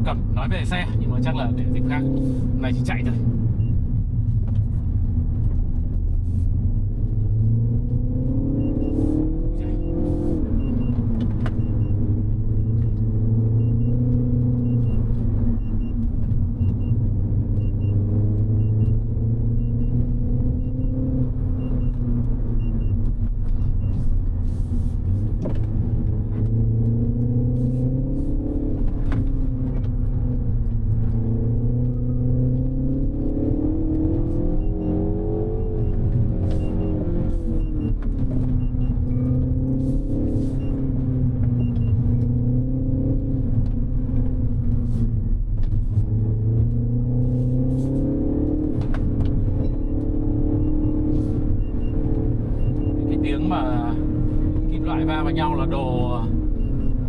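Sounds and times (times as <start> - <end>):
car engine accelerating: 0.0 - 57.0
faint repeating beep: 8.3 - 17.0, 17.6 - 24.1, 34.0 - 41.0, 41.6 - 42.6, 49.5 - 57.0.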